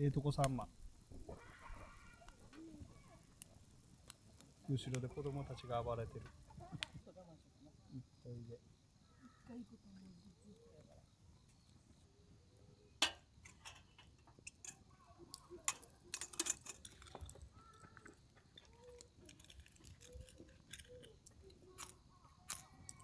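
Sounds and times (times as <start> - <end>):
chewing: 15.3 - 23.0
tableware clicking and tapping: 15.7 - 17.3.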